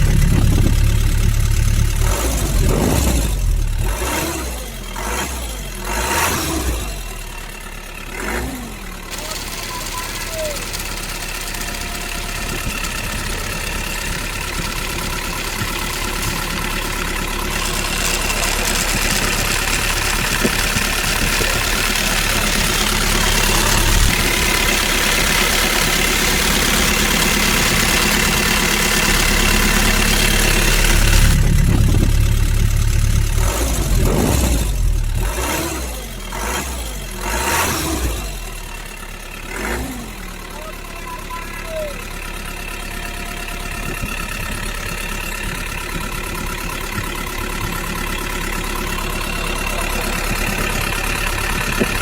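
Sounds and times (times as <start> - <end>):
small motor running: 8.2 - 32.1.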